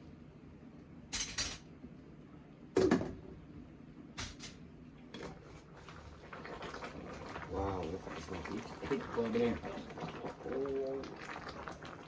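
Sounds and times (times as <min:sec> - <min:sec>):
kitchen clicks and knocks: 0:01.1 - 0:01.7, 0:04.2 - 0:04.6.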